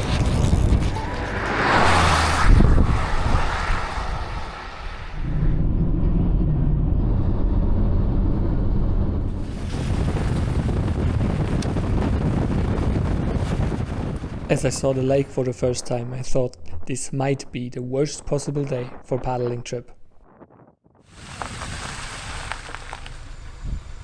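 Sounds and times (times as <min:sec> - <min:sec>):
wind buffeting microphone: 0:00.0 - 0:24.0.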